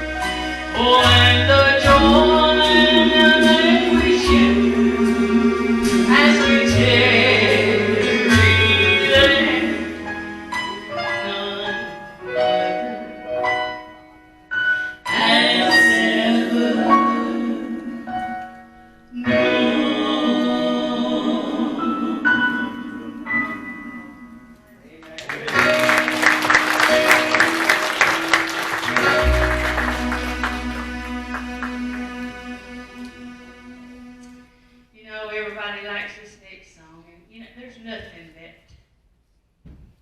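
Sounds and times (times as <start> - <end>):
hymn sung with accompaniment: 0.0 - 13.6, 15.1 - 18.5, 19.1 - 24.4.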